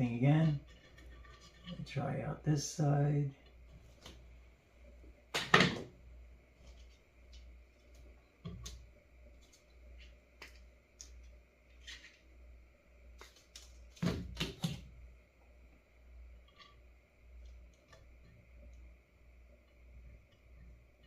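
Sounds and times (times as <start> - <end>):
faint high whine: 0.0 - 5.3.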